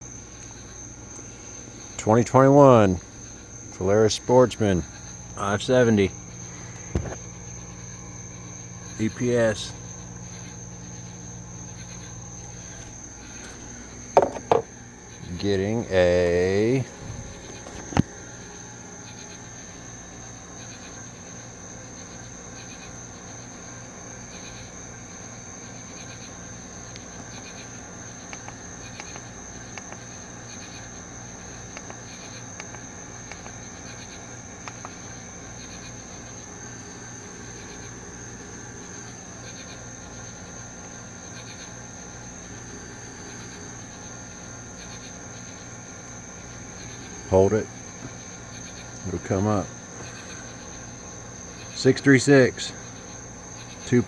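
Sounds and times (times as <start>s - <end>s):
insects chirping: 0.0s - 54.0s
low pulsing hum: 3.0s - 22.5s
light clicks: 32.6s - 33.6s.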